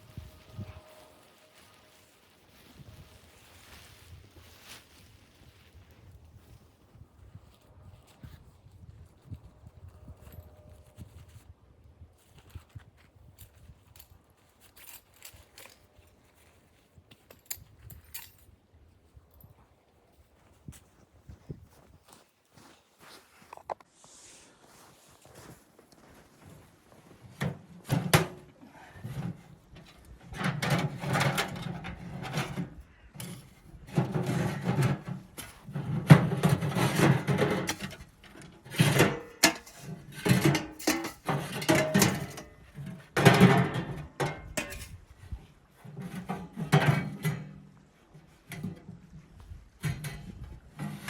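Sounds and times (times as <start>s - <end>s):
hand rubbing and scraping gear: 44.0s - 51.0s.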